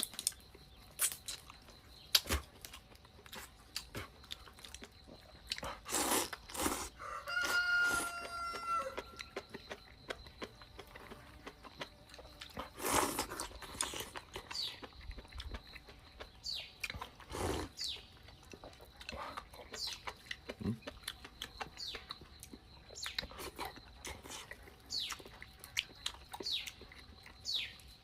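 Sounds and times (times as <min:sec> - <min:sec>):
biting and chewing: 0:00.0 - 0:28.0
rooster crowing: 0:06.9 - 0:09.3.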